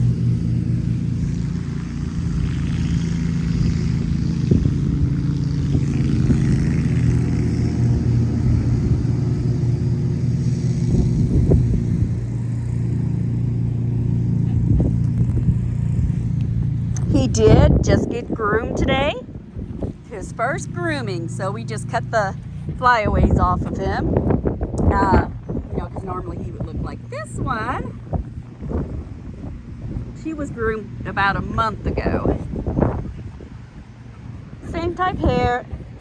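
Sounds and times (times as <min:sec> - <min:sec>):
lawn mower engine running: 0:00.0 - 0:36.0.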